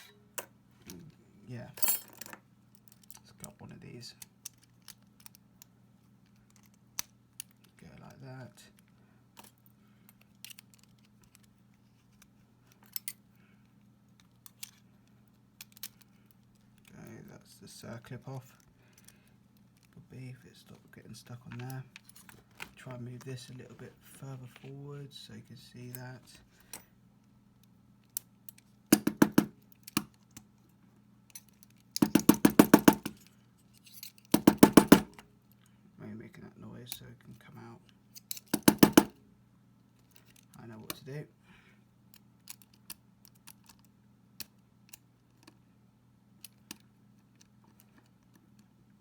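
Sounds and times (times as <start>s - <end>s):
metallic knocks from lock cylinder: 29.0s - 29.5s, 38.6s - 39.1s.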